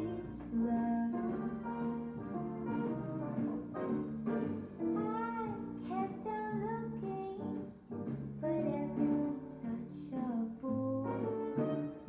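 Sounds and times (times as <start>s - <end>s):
instrumental with plucked strings: 0.0s - 12.0s.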